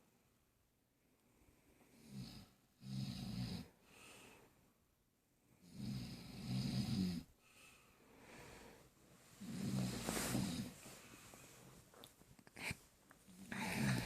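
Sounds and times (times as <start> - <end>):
person snoring: 1.9 - 3.8, 5.6 - 7.3, 9.4 - 10.8, 12.6 - 14.0
soft breath: 3.6 - 4.8, 7.4 - 14.0.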